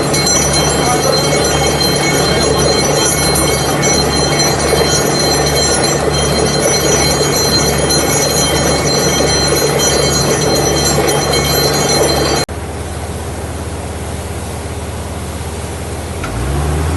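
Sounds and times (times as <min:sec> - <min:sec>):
drilling rig drone: 0:00.0 - 0:12.5
high whining tones: 0:00.0 - 0:12.5.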